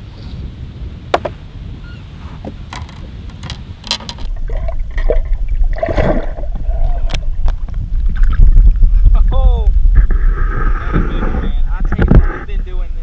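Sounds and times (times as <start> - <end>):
low rumble: 4.2 - 13.0.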